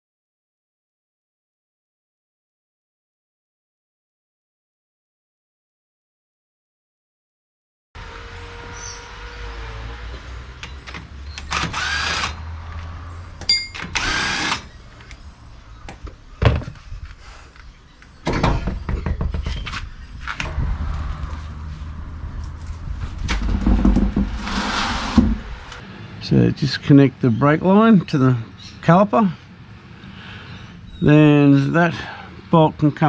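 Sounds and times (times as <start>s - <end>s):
power tool running: 8.0s - 12.7s, 13.8s - 14.8s, 23.4s - 25.8s
tools knocking and clattering: 12.7s - 14.1s, 18.2s - 20.5s, 23.2s - 24.4s.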